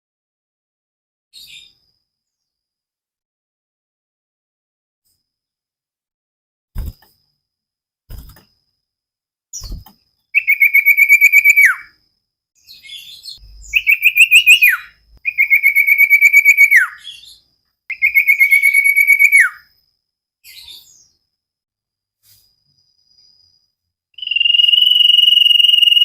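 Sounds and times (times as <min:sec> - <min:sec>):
soft bird chirps: 0:01.4 - 0:02.6, 0:09.5 - 0:21.3
bird trilling song: 0:09.6 - 0:12.0, 0:12.6 - 0:19.7, 0:24.2 - 0:26.0.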